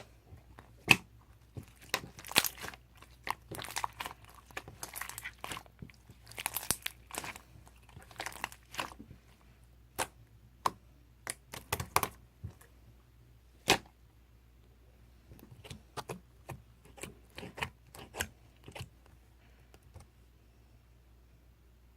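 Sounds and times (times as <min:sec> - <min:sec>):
crackling and crunching: 0:00.0 - 0:09.1.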